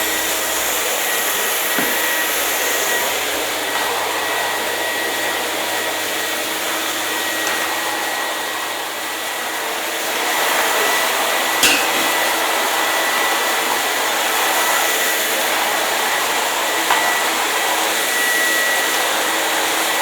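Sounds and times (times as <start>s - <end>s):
hair dryer blowing air: 0.0s - 20.0s.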